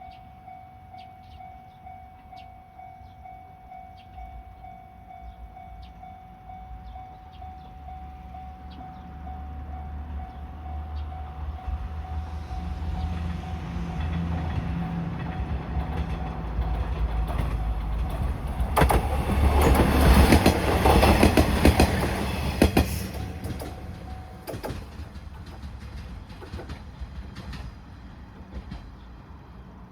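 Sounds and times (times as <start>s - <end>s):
train engine rumble: 0.0s - 29.9s
train wheels clattering over rails: 11.8s - 29.4s.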